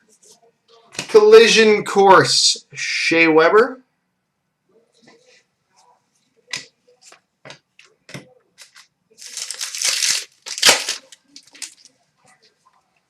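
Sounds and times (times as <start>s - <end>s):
wrapper crinkling and tearing: 8.6s - 11.9s.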